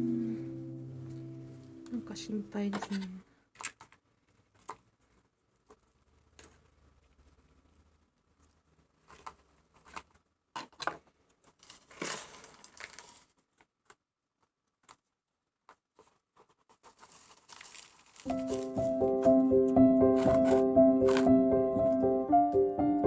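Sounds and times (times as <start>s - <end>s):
music: 0.0s - 2.6s, 18.3s - 23.0s
soft clicks and rustles: 2.6s - 19.2s
gritty rustle of potting soil: 11.1s - 13.8s, 15.8s - 19.3s.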